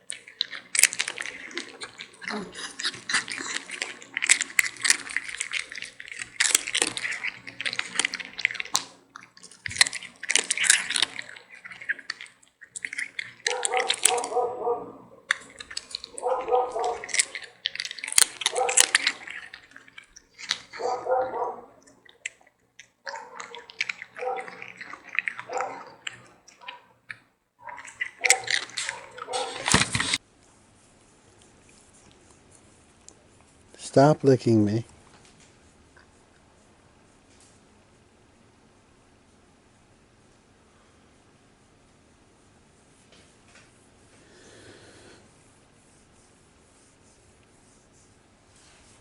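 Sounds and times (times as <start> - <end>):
animals scuffling: 0.0 - 26.8, 27.6 - 36.3
wet mouthing and smacking: 0.0 - 37.8, 42.2 - 49.0.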